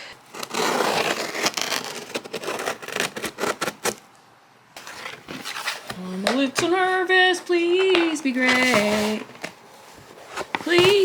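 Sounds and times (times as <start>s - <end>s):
cardboard box ripping open: 0.2s - 4.0s
packaging rustling and scraping: 0.2s - 4.1s, 4.8s - 11.0s.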